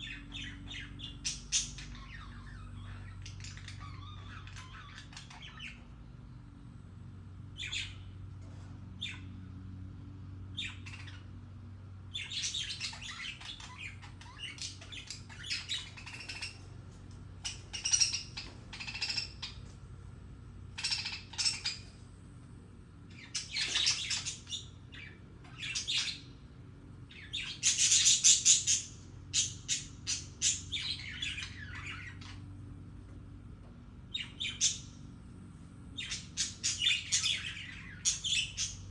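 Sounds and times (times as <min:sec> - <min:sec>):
budgerigars chirping: 0:00.0 - 0:06.0, 0:07.6 - 0:08.1, 0:10.5 - 0:11.3, 0:12.1 - 0:19.8, 0:20.7 - 0:22.0, 0:23.1 - 0:26.4, 0:27.1 - 0:32.4, 0:34.1 - 0:35.0, 0:36.0 - 0:38.9
low steady hum: 0:00.0 - 0:38.9.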